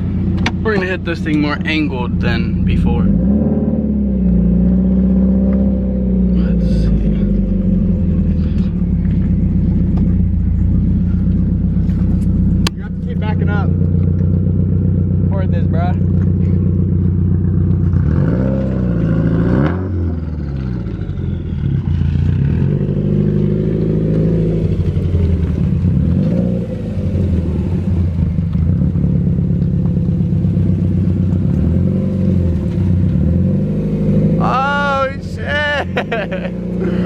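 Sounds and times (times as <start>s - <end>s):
car engine at low revs: 0.0s - 37.0s.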